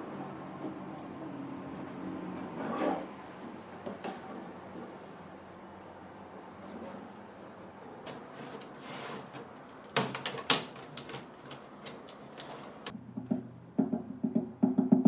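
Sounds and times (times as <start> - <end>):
scraping and rubbing: 2.4 - 3.1, 8.1 - 12.9.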